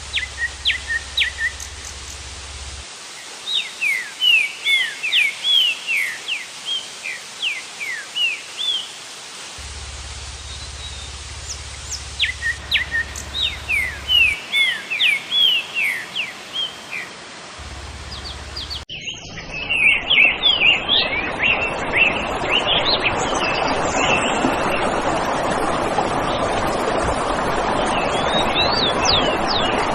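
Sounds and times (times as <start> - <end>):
rushing noise: 0.0 - 3.0, 9.6 - 14.5, 17.6 - 18.8
small birds chirping: 0.0 - 6.8, 9.6 - 19.4
soft steady hiss: 0.0 - 18.8.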